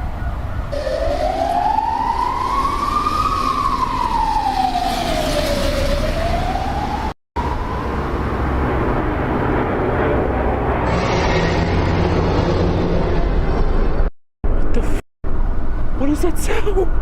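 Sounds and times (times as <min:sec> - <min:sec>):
emergency siren wailing: 0:00.0 - 0:14.1
low rumble: 0:07.4 - 0:15.8.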